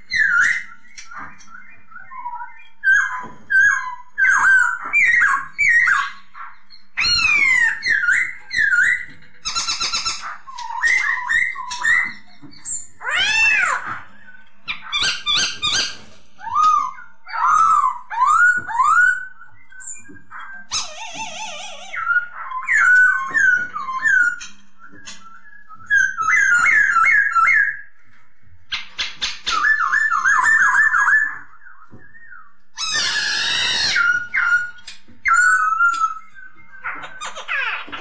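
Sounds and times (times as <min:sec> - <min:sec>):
bird whistling song: 0:00.0 - 0:38.0
bird harsh scratchy chatter: 0:04.3 - 0:14.1, 0:14.7 - 0:18.0, 0:32.8 - 0:36.2.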